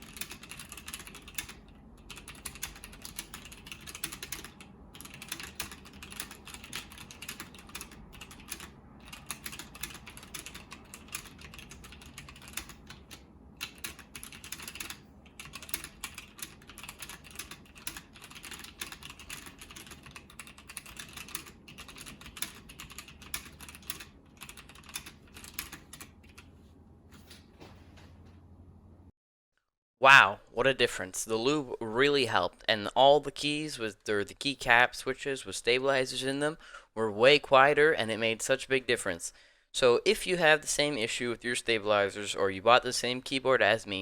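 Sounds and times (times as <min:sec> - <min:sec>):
fast typing on mechanical keyboard: 0:00.0 - 0:26.5.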